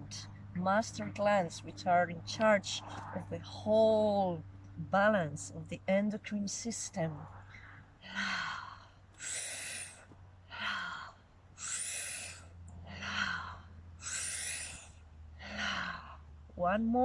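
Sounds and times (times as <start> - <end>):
faint low hum: 0.0 - 17.0
woman breathing deeply: 7.4 - 16.4.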